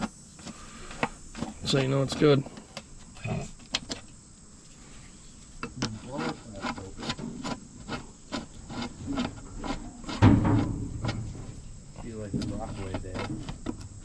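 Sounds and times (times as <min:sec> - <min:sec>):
hand tools scraping metal: 0:04.8 - 0:14.0.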